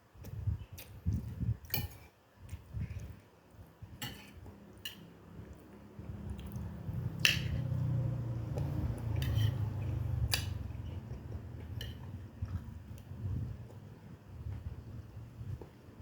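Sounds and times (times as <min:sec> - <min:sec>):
person chewing food: 0:04.1 - 0:07.8, 0:08.4 - 0:14.2.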